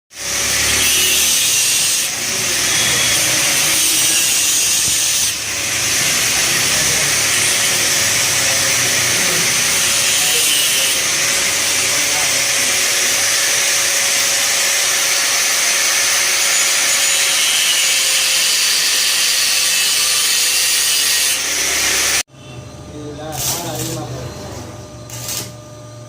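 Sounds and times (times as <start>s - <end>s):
arc welding hiss: 23.3s - 24.1s, 25.1s - 25.6s.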